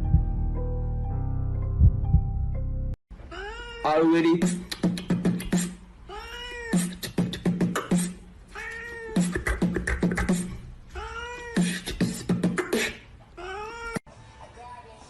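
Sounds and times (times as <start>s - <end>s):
low thumps: 0.0s - 0.6s, 1.6s - 2.6s
looped cat meow: 6.1s - 7.0s, 8.6s - 9.4s.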